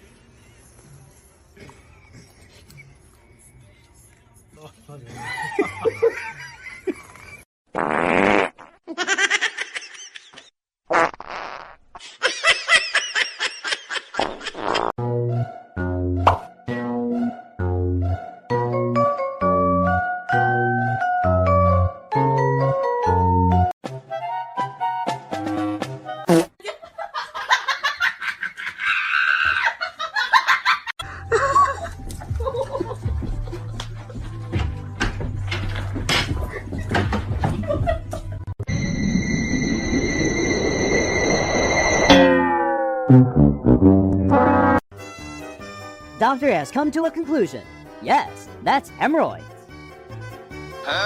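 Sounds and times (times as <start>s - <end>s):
music: 0.0s - 2.2s, 15.0s - 26.5s, 31.0s - 38.5s, 43.1s - 51.0s
rhythmic laughter: 5.1s - 7.4s, 29.8s - 34.6s, 36.3s - 38.5s
buzzing fart sound: 7.7s - 8.8s, 10.9s - 12.0s, 14.2s - 14.9s.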